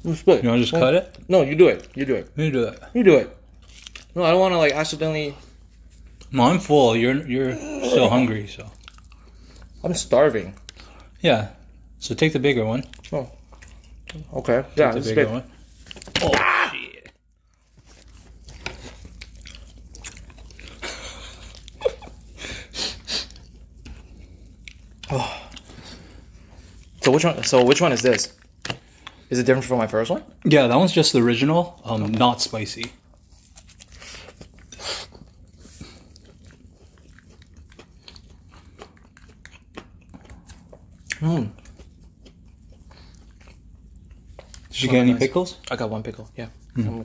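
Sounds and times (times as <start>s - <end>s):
biting and chewing food: 0.0s - 47.0s
soft crunch: 3.5s - 4.2s.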